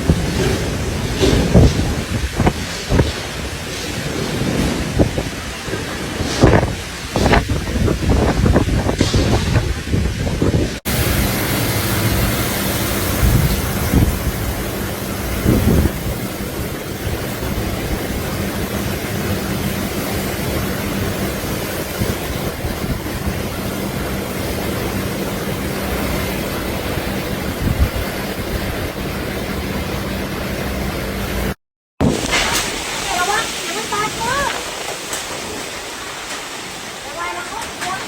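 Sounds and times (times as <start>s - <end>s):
strong wind on microphone: 0.0s - 18.6s, 25.8s - 29.2s.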